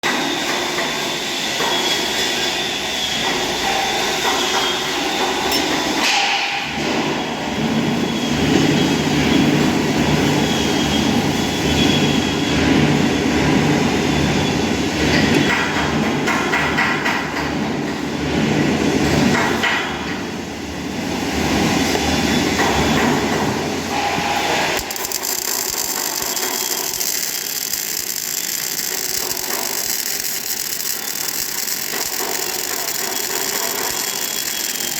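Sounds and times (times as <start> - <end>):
welding arc crackling: 24.2 - 34.9.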